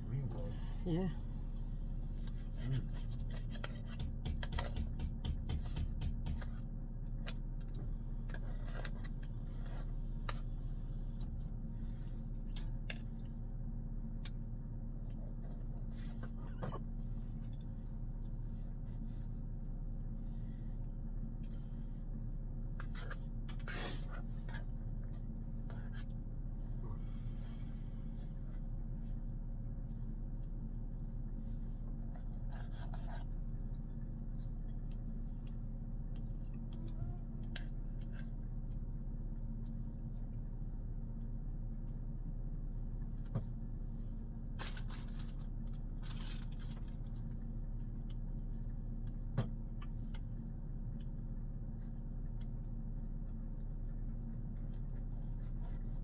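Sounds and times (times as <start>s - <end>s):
low mechanical hum: 0.0s - 56.0s
light clicks and scrapes: 22.7s - 26.2s.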